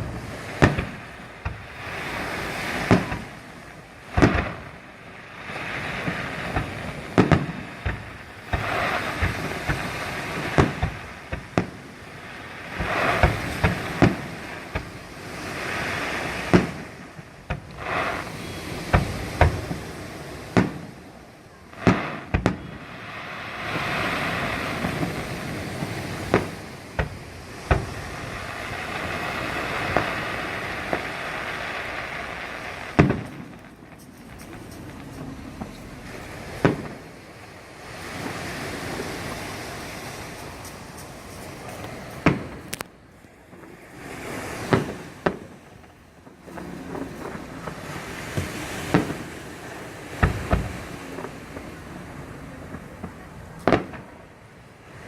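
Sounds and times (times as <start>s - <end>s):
firework shells bursting: 0.0s - 21.1s, 21.8s - 51.8s
fireworks crackling: 0.0s - 55.0s.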